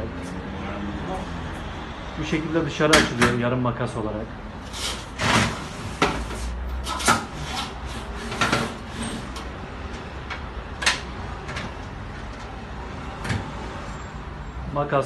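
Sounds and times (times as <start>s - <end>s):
rolling shutter slats clacking: 4.7s - 12.6s.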